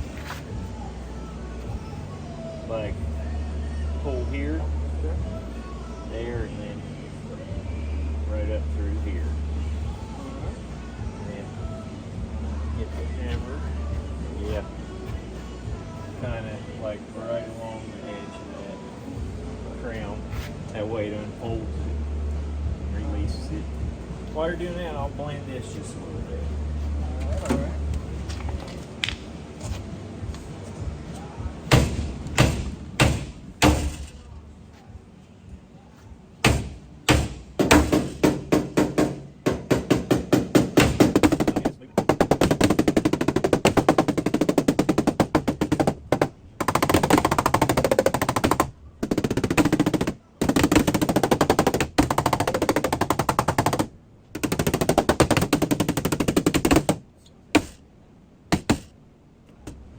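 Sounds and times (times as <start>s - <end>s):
hammer tapping on sheet metal: 31.7s - 34.2s, 36.4s - 57.0s, 57.6s - 57.8s, 58.5s - 58.9s.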